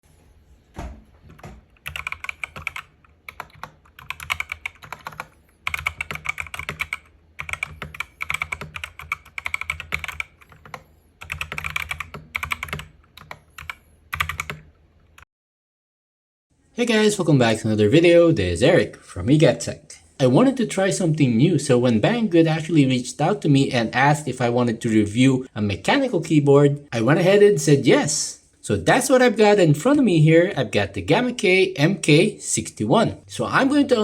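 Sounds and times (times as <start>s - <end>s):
mechanical keyboard typing: 1.3s - 14.7s.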